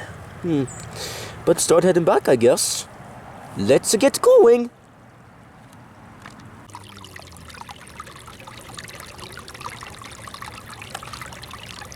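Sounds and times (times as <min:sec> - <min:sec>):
water trickling: 0:06.6 - 0:11.9.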